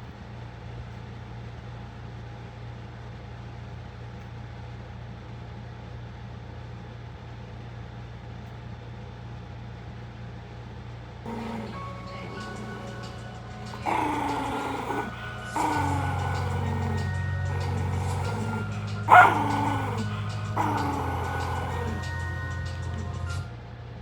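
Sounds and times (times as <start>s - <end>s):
music: 11.3s - 23.5s
low hum: 11.3s - 23.6s.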